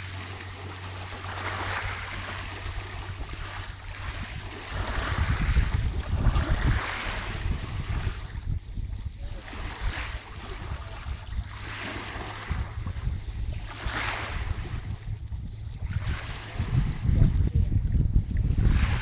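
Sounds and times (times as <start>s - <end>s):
waves washing in: 0.0s - 17.6s, 18.4s - 19.0s
wind buffeting microphone: 0.0s - 19.0s.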